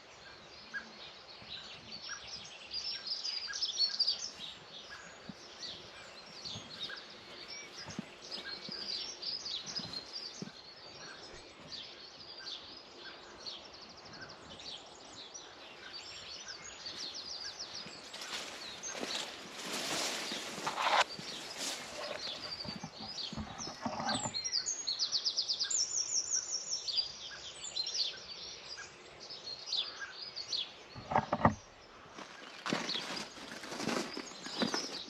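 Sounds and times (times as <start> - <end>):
songbirds singing and chirping: 0.0 - 35.0.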